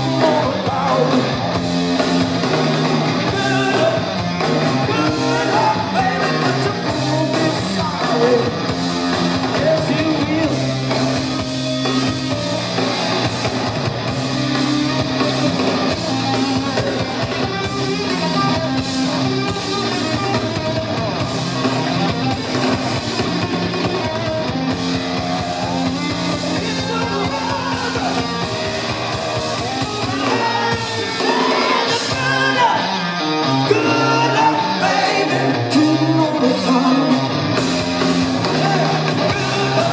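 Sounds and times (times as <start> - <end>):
person singing: 0.0 - 1.4, 3.2 - 4.2, 4.8 - 8.7, 30.0 - 37.4, 38.4 - 39.9
bass: 0.0 - 39.9
drums: 0.0 - 39.9
electric guitar: 0.0 - 39.9.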